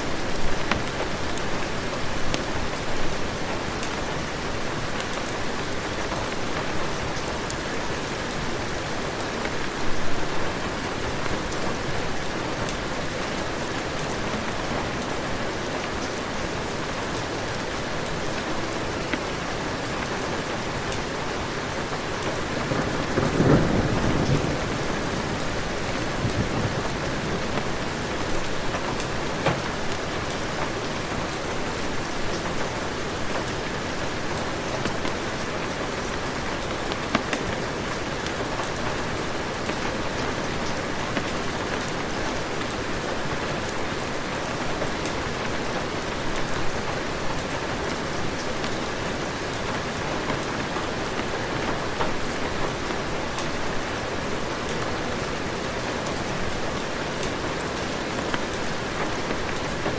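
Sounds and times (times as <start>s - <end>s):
heavy rain: 0.0s - 59.9s
low roll of thunder: 22.6s - 28.6s.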